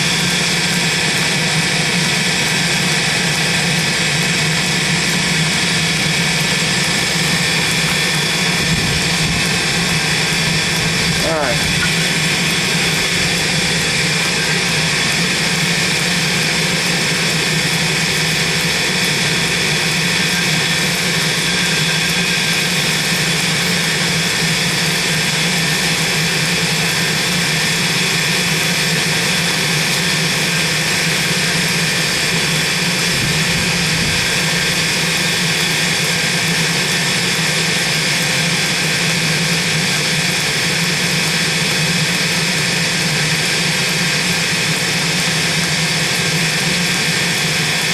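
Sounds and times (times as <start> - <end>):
forge rushing roar: 0.0 - 26.8
low hum: 5.9 - 16.3.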